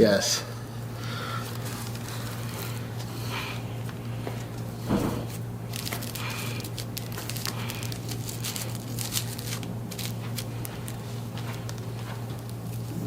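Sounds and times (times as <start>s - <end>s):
steady low hum: 0.0s - 13.0s
fabric rustling and crackling: 5.2s - 13.0s.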